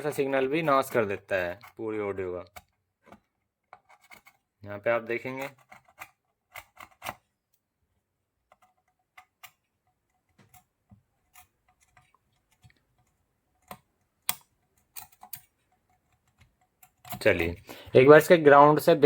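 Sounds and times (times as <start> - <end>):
small tools clicking and tapping: 8.5 - 17.5.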